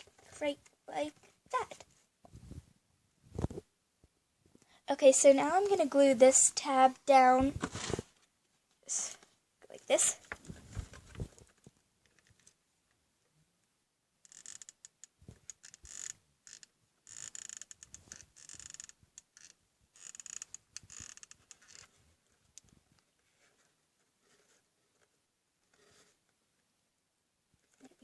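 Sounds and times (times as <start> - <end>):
scratchy cardboard rustles: 7.2 - 8.3.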